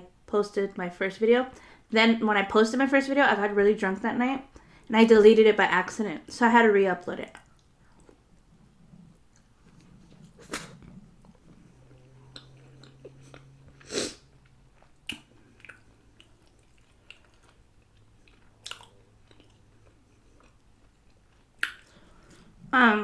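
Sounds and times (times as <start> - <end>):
person chewing food: 7.4 - 22.7.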